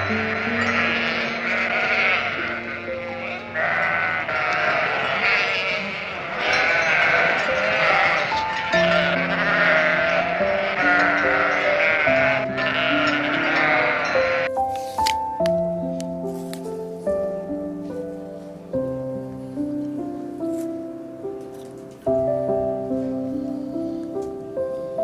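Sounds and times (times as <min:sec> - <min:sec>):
animal bleating: 0:00.0 - 0:14.5
background music with held notes: 0:00.0 - 0:25.0.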